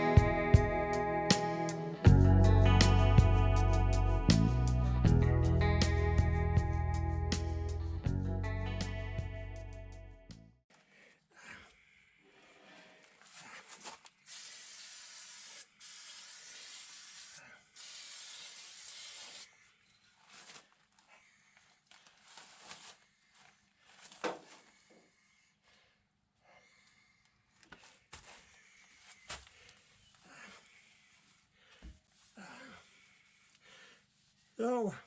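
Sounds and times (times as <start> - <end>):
aerosol spray can hissing: 14.3 - 19.5.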